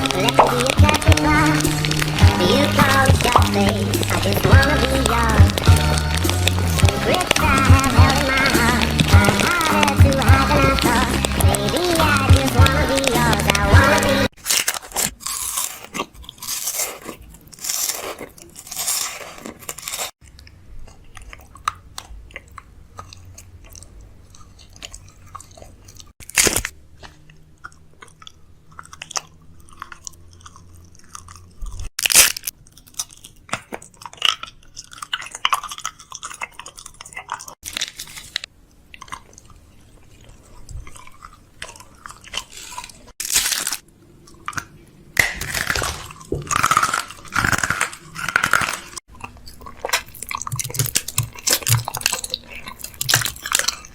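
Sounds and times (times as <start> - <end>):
crunching and chewing: 0.0 - 53.9.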